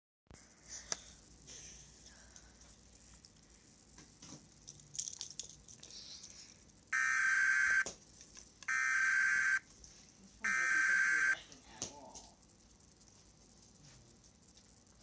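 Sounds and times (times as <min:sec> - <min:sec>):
buzzy electronic bursts: 0:07.0 - 0:07.8, 0:08.7 - 0:09.6, 0:10.5 - 0:11.4.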